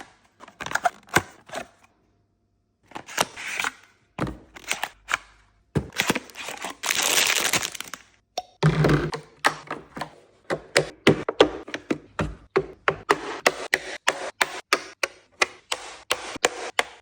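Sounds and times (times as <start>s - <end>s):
packaging rustling and crinkling: 5.9s - 8.1s.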